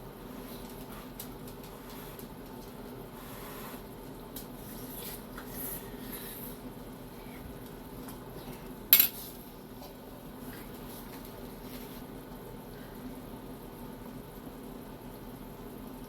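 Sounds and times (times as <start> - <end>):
cutlery and dishes clinking: 9.0 - 9.2
dishes clattering: 9.0 - 9.2.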